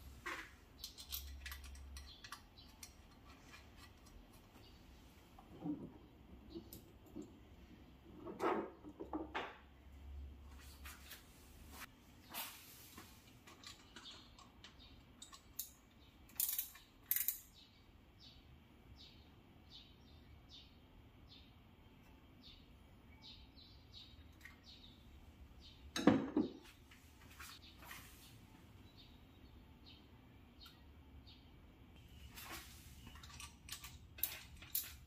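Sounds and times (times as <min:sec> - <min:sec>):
small bird chirping: 0:22.3 - 0:25.9, 0:27.4 - 0:32.8.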